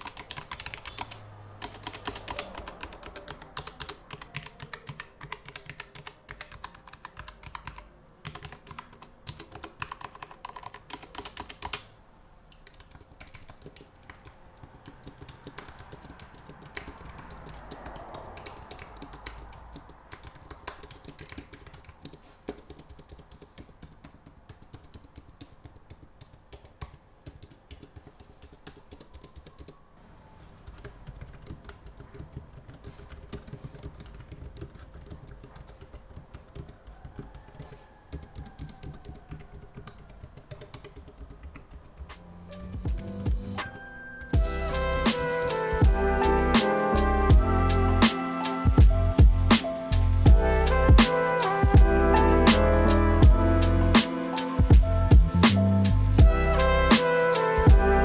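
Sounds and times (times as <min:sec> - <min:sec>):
mechanical keyboard typing: 0:00.0 - 0:11.9, 0:12.5 - 0:29.8, 0:30.6 - 0:44.4.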